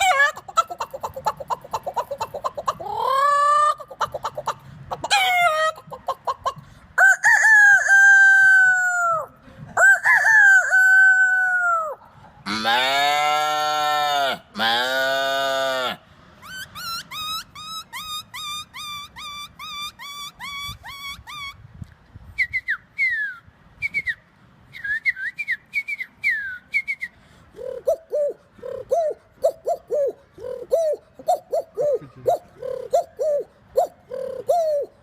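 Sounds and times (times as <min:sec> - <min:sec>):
low dove-like cooing: 0:00.0 - 0:07.5, 0:27.5 - 0:35.0
whistled bird chirps: 0:22.4 - 0:27.2.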